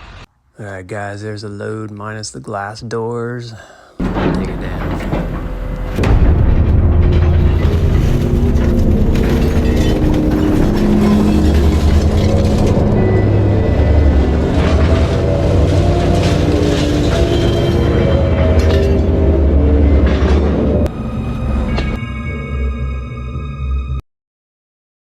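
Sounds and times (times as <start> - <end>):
background music with low drone: 4.2 - 24.0.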